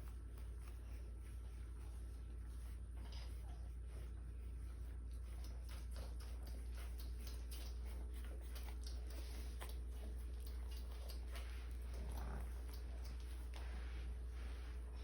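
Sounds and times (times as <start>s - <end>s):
steady low hum: 0.0s - 15.0s
puppy claws ticking on floor: 5.2s - 13.6s.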